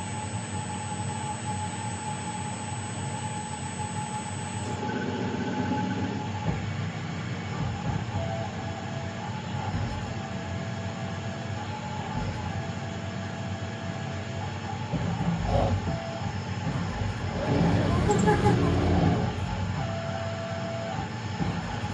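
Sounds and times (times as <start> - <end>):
motors humming and rumbling: 0.0 - 6.8, 14.9 - 20.1
low motor whine: 0.0 - 7.0, 14.8 - 21.8
thin motor whine: 0.0 - 21.9.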